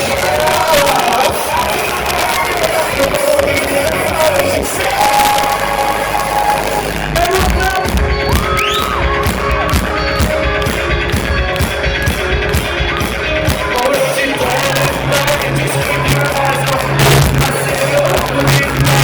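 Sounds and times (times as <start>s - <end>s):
drums steady beat: 0.0s - 19.0s
live rock band playing: 6.6s - 19.0s.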